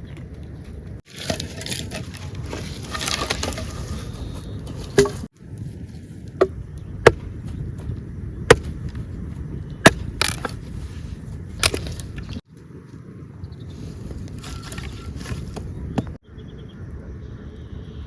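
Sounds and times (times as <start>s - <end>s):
firewood being chopped: 4.9s - 5.3s, 6.4s - 9.1s, 9.8s - 10.7s, 11.6s - 12.1s.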